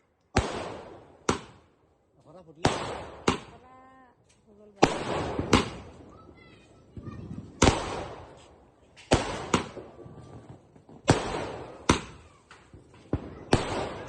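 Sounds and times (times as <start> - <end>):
firework bangs: 0.3 - 1.7, 2.6 - 3.8, 4.8 - 14.0.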